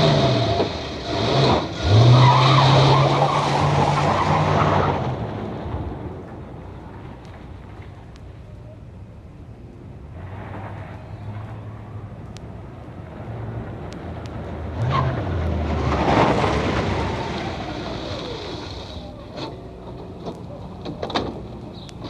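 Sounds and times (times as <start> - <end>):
car engine revving: 0.0 - 5.4.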